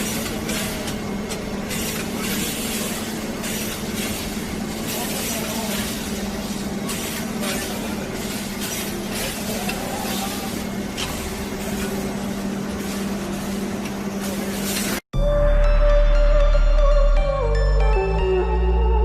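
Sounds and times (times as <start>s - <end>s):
machinery hiss: 0.0s - 15.0s
factory machinery humming: 0.0s - 19.0s.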